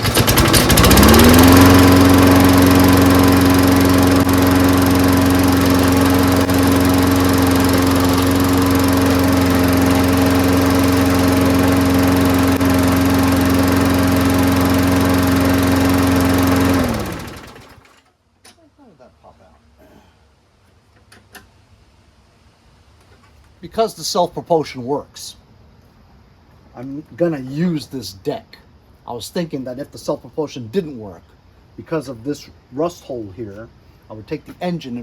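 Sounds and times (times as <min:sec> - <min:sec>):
lawn mower engine starting and running: 0:00.0 - 0:18.1.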